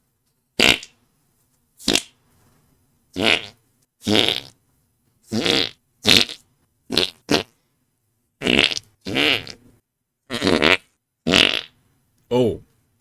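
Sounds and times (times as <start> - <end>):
armpit fart noises: 0.6 - 0.9, 3.2 - 4.6, 5.3 - 7.6, 8.4 - 9.6, 10.3 - 11.8.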